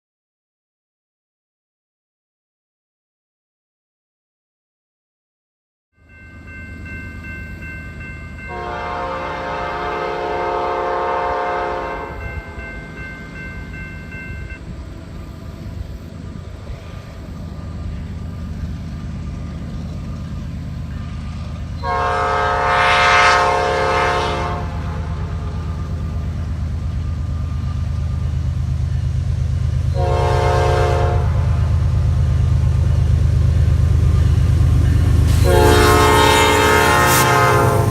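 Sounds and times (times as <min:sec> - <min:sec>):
locomotive engine rumble: 0:06.3 - 0:37.9
locomotive air horn blasts: 0:08.5 - 0:12.3, 0:21.8 - 0:25.8, 0:29.9 - 0:31.8, 0:35.1 - 0:37.9.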